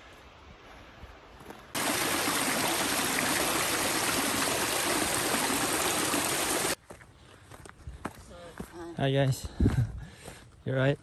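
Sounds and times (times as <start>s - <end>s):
stream rushing over rocks: 1.8s - 6.8s.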